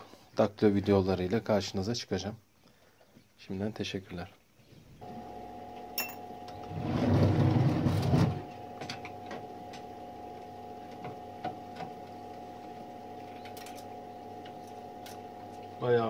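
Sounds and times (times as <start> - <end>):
steady hum: 5.0 - 16.0.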